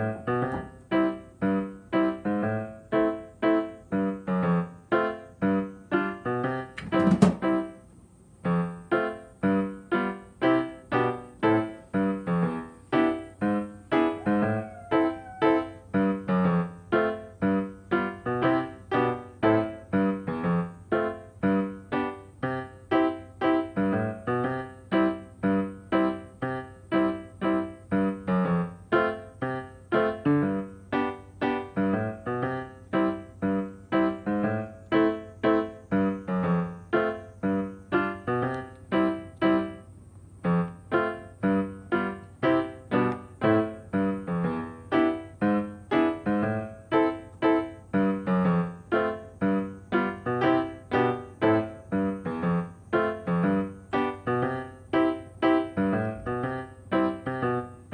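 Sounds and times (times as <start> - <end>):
bouncy piano tune: 0.0 - 57.9.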